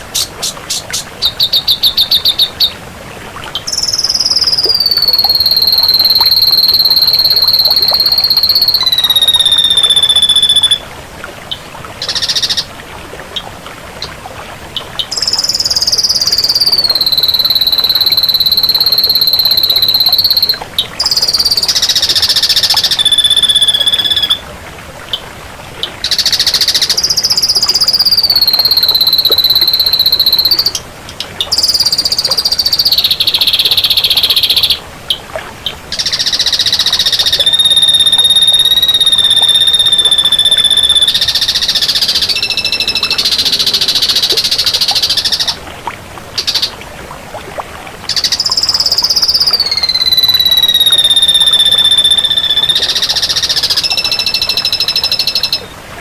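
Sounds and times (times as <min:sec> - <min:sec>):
bird singing whistles and trills: 0:00.0 - 0:02.8, 0:03.6 - 0:10.9, 0:11.5 - 0:12.7, 0:14.8 - 0:24.5, 0:25.8 - 0:30.8, 0:31.4 - 0:34.8, 0:35.9 - 0:45.6, 0:46.4 - 0:46.8, 0:48.1 - 0:55.8.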